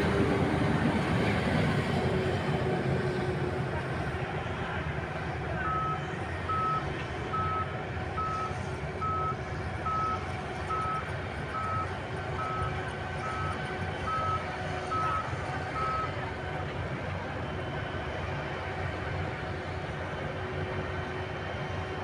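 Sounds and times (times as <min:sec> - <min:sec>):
diesel engine rumble: 0:00.0 - 0:22.0
reversing alarm beeping: 0:05.6 - 0:16.2.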